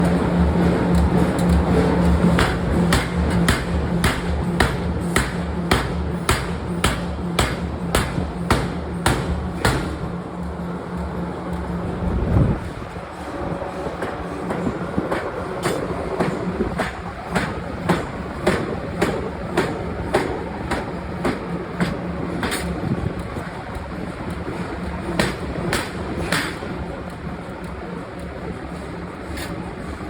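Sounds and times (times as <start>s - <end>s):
steady machine hum: 0.0s - 30.0s
stamping press striking metal: 2.3s - 10.1s, 25.0s - 26.7s.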